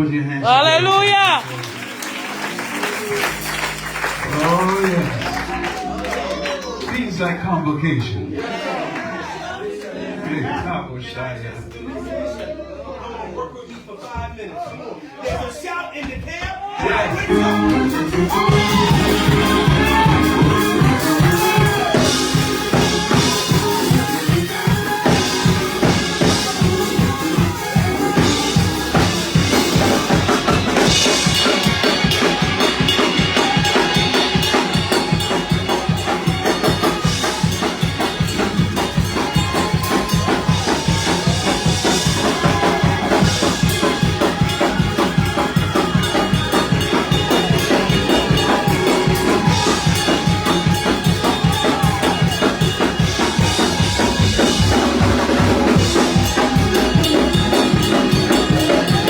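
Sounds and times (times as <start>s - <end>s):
drum kit fast beat: 0.6s - 6.4s, 17.0s - 59.0s
sustained higher notes: 17.1s - 59.0s.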